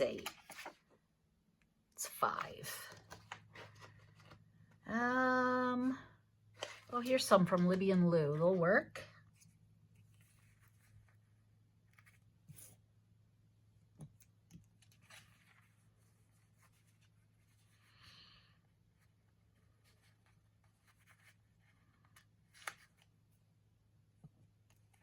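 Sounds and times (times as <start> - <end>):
paper rustle: 0.0 - 0.9, 2.9 - 4.5, 14.7 - 18.0.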